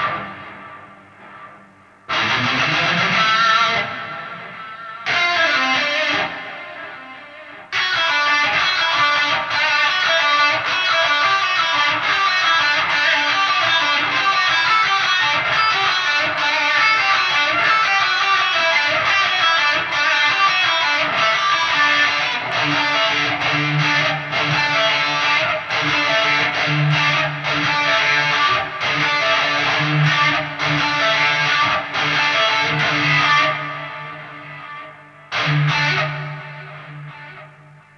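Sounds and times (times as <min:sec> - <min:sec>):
electric guitar: 0:00.0 - 0:37.9.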